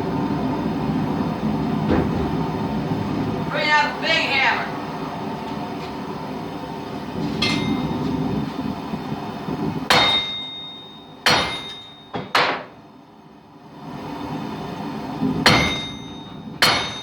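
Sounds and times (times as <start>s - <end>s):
steady low hum: 0.0s - 17.0s
metallic anvil ring: 7.4s - 8.0s, 9.9s - 12.7s, 15.5s - 17.0s
sledgehammer striking anvil: 7.4s - 8.0s, 9.9s - 12.7s, 15.5s - 17.0s.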